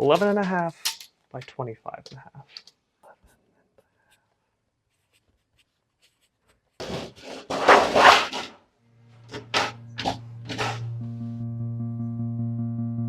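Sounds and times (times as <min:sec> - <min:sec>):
synth bass note: 0:09.0 - 0:13.0
noisy percussion hits: 0:09.3 - 0:11.0.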